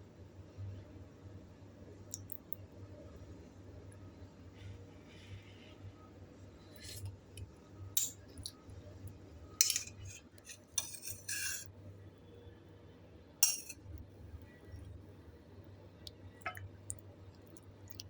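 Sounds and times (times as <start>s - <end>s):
low steady hum: 0.0s - 18.0s
spoon scraping dishware: 6.8s - 7.1s, 9.6s - 11.7s, 13.4s - 13.8s.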